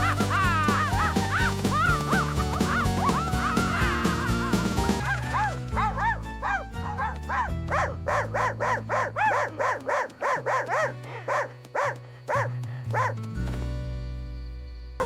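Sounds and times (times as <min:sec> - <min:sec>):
background music: 0:00.0 - 0:15.0
dog barking: 0:05.0 - 0:13.2.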